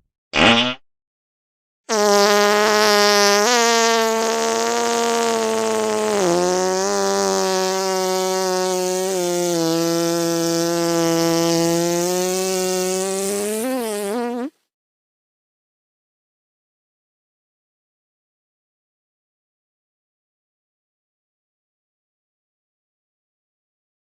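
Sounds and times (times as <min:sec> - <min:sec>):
fly buzzing: 0:01.9 - 0:14.5.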